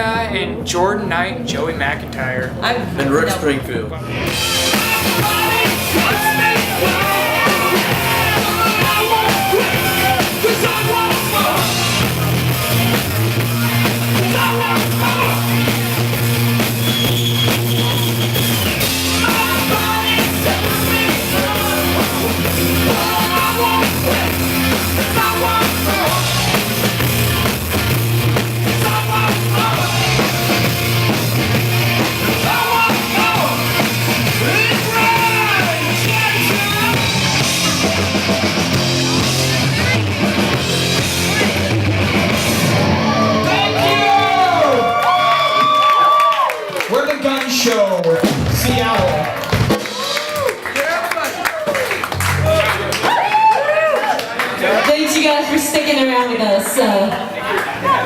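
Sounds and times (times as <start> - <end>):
rock band playing: 4.0 - 50.8, 51.4 - 53.9
person singing: 4.4 - 12.1, 13.6 - 15.9, 19.1 - 26.8, 28.6 - 30.7, 32.2 - 33.8.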